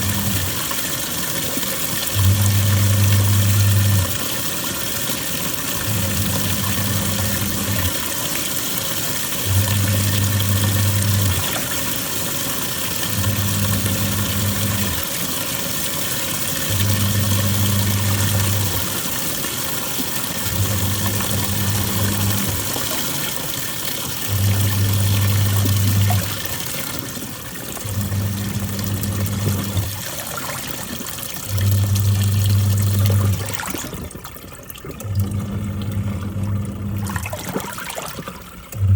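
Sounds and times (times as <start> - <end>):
washing machine motor humming: 0.0 - 38.9
water sloshing: 20.0 - 38.9.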